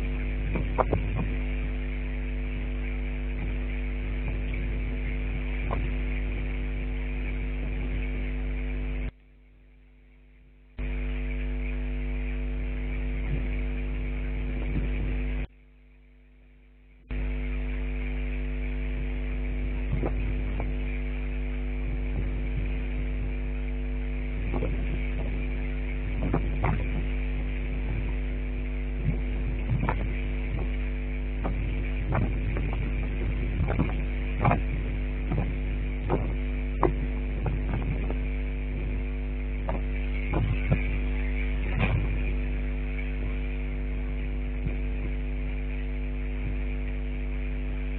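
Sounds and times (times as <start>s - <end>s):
electrical hum: 0.0s - 47.9s.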